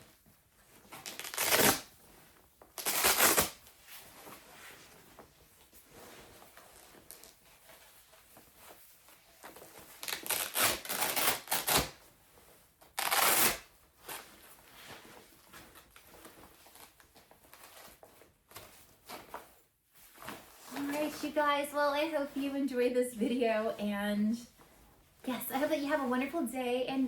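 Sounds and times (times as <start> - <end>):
fabric rustling: 0.0 - 27.0
velcro straps ripping open: 0.9 - 1.9, 2.8 - 3.6, 9.6 - 12.0, 13.0 - 14.2.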